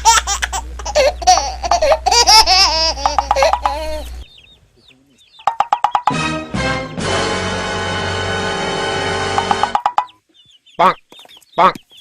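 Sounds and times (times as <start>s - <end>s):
cartoon-style laughter: 0.0s - 4.2s
rapid high notes: 5.5s - 10.0s.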